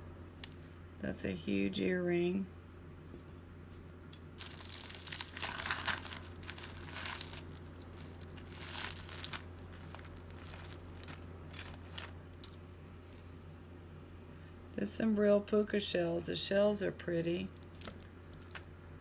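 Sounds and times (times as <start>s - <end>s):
jewelry rummaging: 4.4s - 13.7s, 17.4s - 18.6s
plastic bag crinkling: 4.4s - 13.7s, 17.5s - 18.6s.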